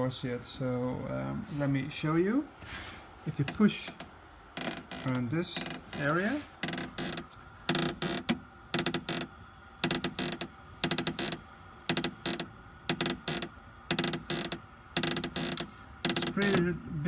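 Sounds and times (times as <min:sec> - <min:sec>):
car door creaking: 0:03.5 - 0:16.7.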